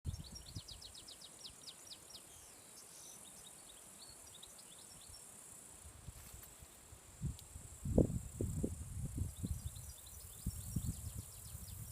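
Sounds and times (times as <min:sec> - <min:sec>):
small bird chirping: 0:00.1 - 0:05.3, 0:09.2 - 0:11.9
high insect hiss: 0:00.1 - 0:11.9
low wind rumble: 0:07.0 - 0:11.9.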